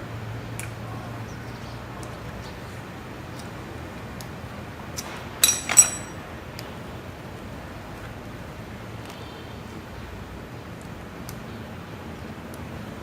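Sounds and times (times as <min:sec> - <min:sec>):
metal tool clinking on metal: 0:05.4 - 0:06.2.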